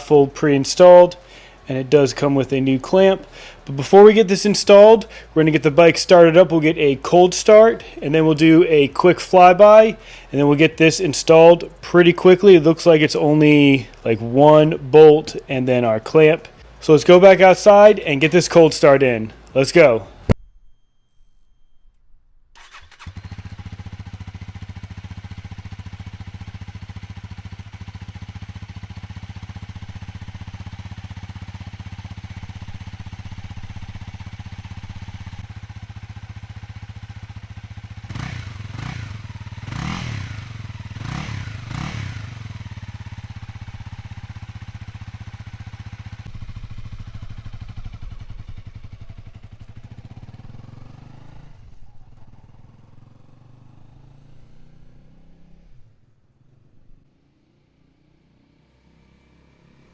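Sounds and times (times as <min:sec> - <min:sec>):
motorcycle engine idling: 0:22.6 - 0:54.3
motorcycle engine revving: 0:22.6 - 0:59.9.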